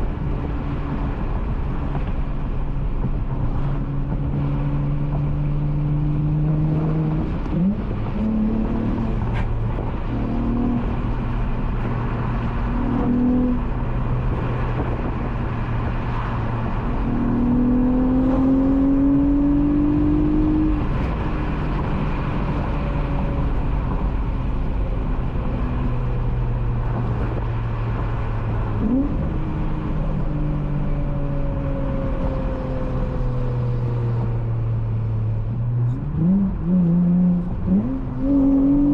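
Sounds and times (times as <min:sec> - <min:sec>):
car engine accelerating: 0:00.0 - 0:38.9.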